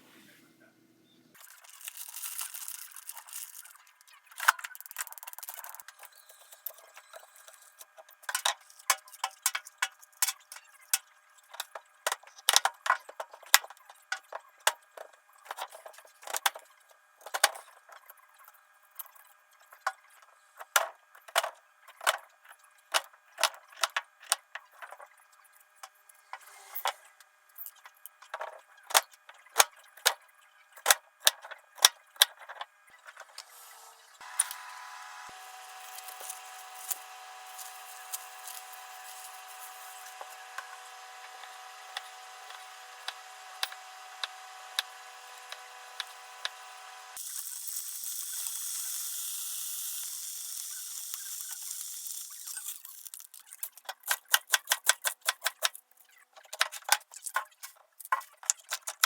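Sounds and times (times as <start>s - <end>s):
small hard objects clinking: 1.4s - 7.6s, 34.2s - 46.6s, 47.2s - 59.0s.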